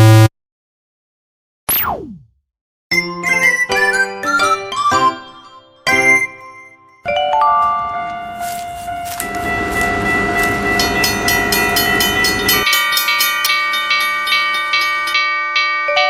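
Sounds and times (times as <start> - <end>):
train horn tones: 8.1 - 12.6
rush of passing train: 8.4 - 14.8
ringing strikes: 9.1 - 16.0.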